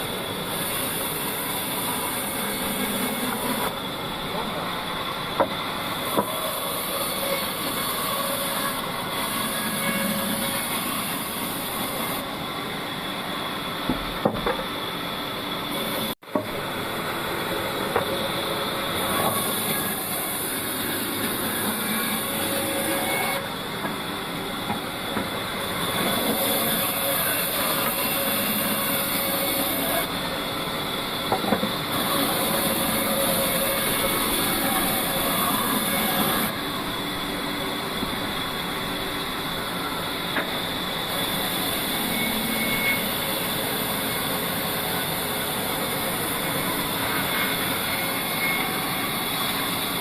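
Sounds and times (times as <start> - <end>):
band saw cutting log: 0.0 - 3.9, 5.3 - 12.3, 17.4 - 30.3, 31.2 - 36.7, 40.3 - 50.0.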